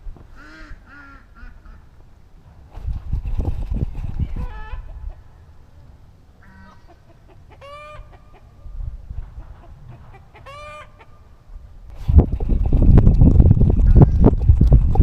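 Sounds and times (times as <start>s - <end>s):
chicken calling: 4.2s - 5.3s, 6.4s - 8.6s, 9.6s - 11.3s.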